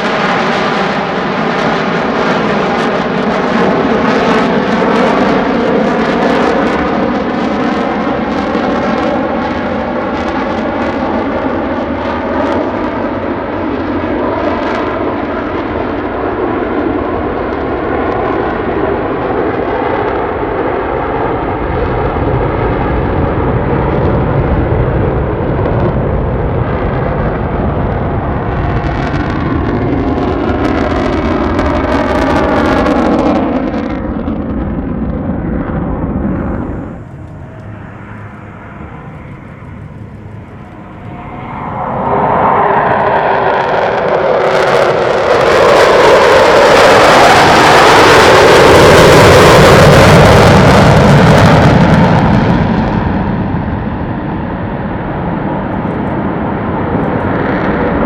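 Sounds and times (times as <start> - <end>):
jet flying past: 0.0 - 58.0.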